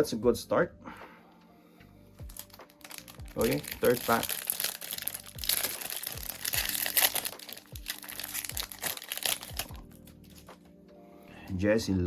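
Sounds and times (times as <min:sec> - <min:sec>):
background music with steady beat: 0:00.0 - 0:12.0
wrapper tearing and crinkling: 0:02.3 - 0:10.5.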